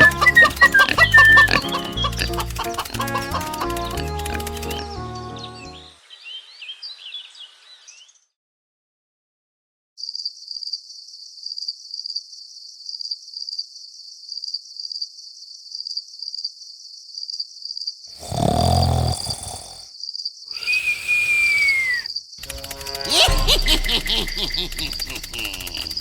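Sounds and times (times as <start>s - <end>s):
crickets chirping: 18.2s - 19.8s, 20.6s - 22.2s.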